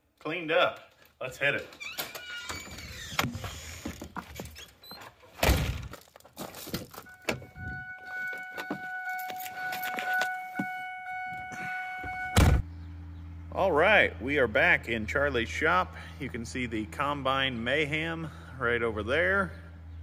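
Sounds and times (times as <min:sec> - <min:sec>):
keys rattling: 0:06.1 - 0:10.6
steady electronic tone: 0:07.0 - 0:14.4
car door thunk: 0:12.0 - 0:12.6.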